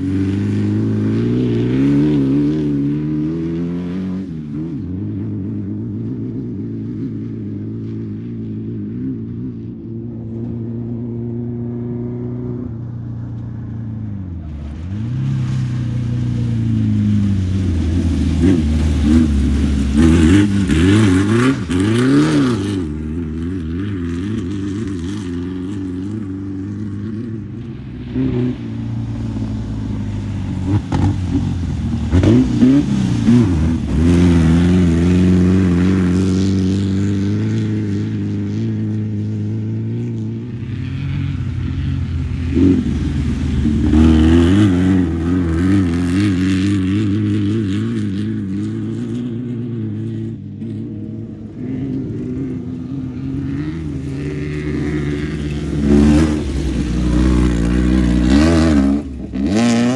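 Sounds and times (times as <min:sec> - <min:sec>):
race car engines revving: 0:00.0 - 0:59.9.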